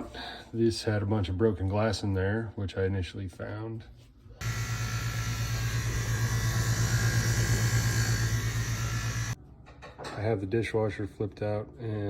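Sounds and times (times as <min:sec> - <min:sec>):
dishwasher pump grinding buzz: 0:04.4 - 0:09.4.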